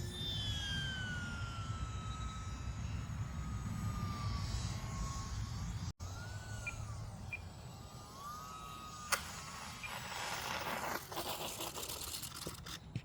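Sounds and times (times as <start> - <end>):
electric motor whining: 0.0 - 12.8
scratchy crackling noise: 9.7 - 13.0.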